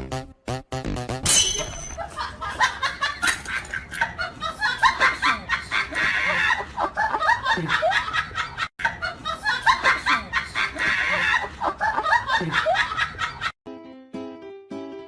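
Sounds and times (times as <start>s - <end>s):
person laughing in bursts: 2.0s - 13.6s.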